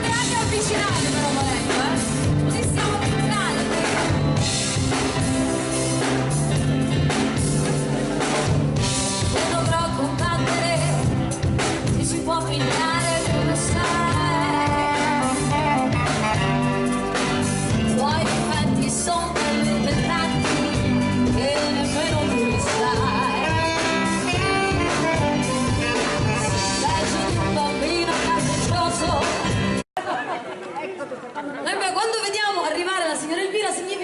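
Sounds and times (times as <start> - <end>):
live band playing: 0.0 - 29.8
person singing: 11.8 - 16.7.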